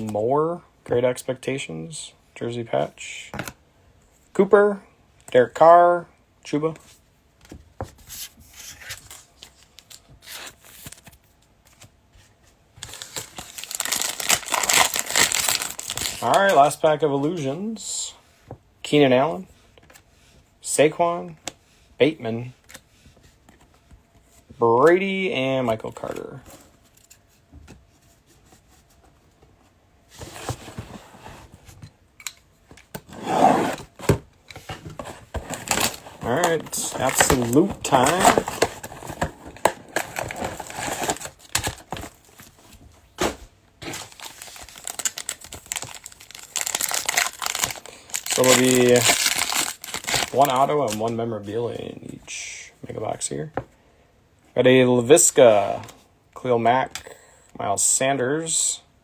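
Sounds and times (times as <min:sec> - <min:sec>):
card pack wrapper tearing: 0:12.8 - 0:16.7, 0:35.4 - 0:42.2, 0:43.8 - 0:51.0
cards rubbing and clicking: 0:35.0 - 0:42.0, 0:43.8 - 0:51.0.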